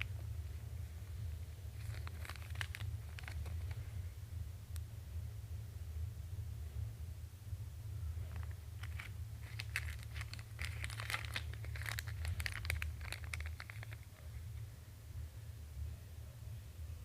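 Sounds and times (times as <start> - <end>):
crinkling and rustling: 0.0 - 3.9, 8.2 - 14.5
steady low hum: 0.0 - 17.0.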